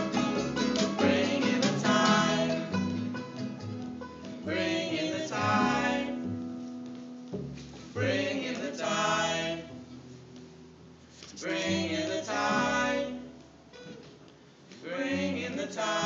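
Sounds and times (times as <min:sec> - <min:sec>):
live band playing: 0:00.0 - 0:04.4
person singing: 0:01.0 - 0:02.8.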